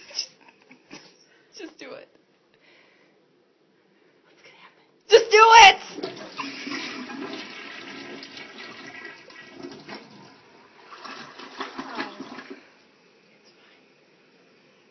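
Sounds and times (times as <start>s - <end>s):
toilet flushing: 5.8s - 13.0s.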